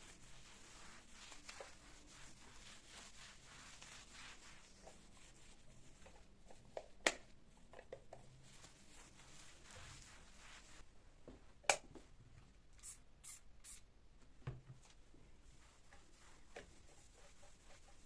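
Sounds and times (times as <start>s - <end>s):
rustling and rubbing: 0.0s - 6.8s, 8.2s - 10.8s, 14.8s - 18.0s.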